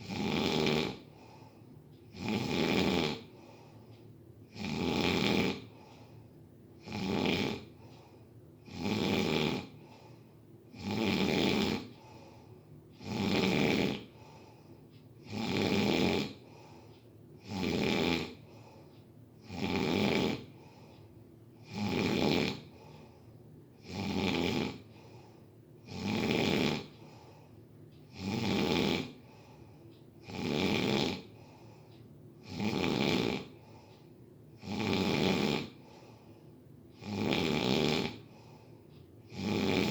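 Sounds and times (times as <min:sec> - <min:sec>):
person snoring: 0:00.0 - 0:01.5, 0:02.1 - 0:03.8, 0:04.5 - 0:06.0, 0:06.8 - 0:12.4, 0:13.0 - 0:14.5, 0:15.2 - 0:18.8, 0:19.4 - 0:20.9, 0:21.6 - 0:23.2, 0:23.8 - 0:27.4, 0:28.1 - 0:31.8, 0:32.4 - 0:33.9, 0:34.6 - 0:36.2, 0:36.9 - 0:38.7, 0:39.3 - 0:39.9.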